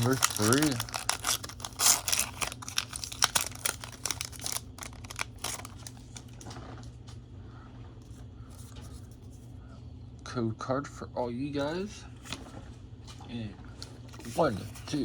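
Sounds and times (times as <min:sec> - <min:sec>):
foil wrapper tearing and crinkling: 0:00.0 - 0:06.5.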